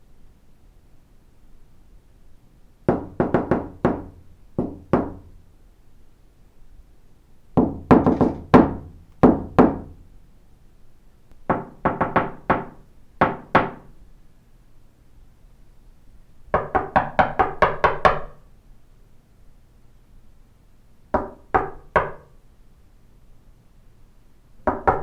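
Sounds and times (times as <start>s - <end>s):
knocking on a door: 2.9s - 5.3s, 7.6s - 10.0s, 11.5s - 13.9s, 16.5s - 18.4s, 21.2s - 22.3s, 24.6s - 25.0s.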